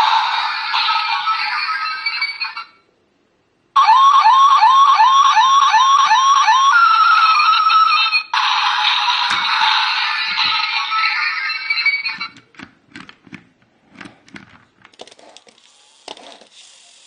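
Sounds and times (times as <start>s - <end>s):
electronic siren chirps: 3.8s - 12.3s.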